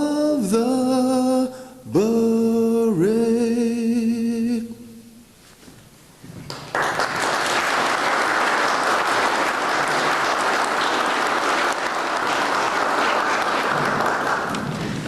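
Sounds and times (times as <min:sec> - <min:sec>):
audience applauding: 0:06.5 - 0:15.0.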